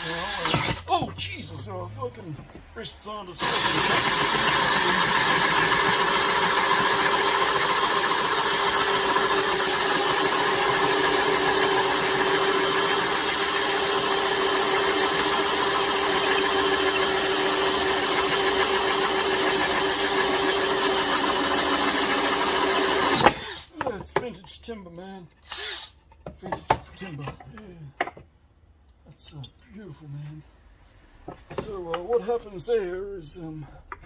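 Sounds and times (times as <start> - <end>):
electric drill boring into wood: 0.0 - 0.8, 3.4 - 23.7, 25.4 - 26.0.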